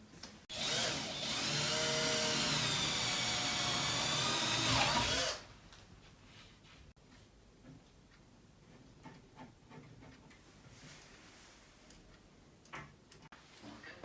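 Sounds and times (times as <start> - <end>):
electric drill running: 0.5 - 5.4.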